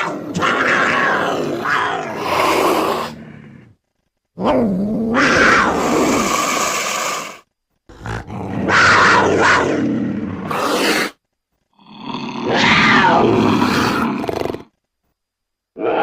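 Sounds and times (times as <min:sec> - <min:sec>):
creature growling roars: 0:00.0 - 0:03.7, 0:04.4 - 0:11.2, 0:11.8 - 0:14.7.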